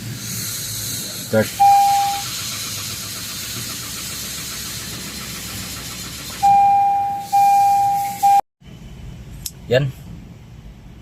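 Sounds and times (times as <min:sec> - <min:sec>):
car engine cranking: 0:00.2 - 0:08.4
steady electronic beep: 0:01.6 - 0:02.2, 0:06.4 - 0:08.4.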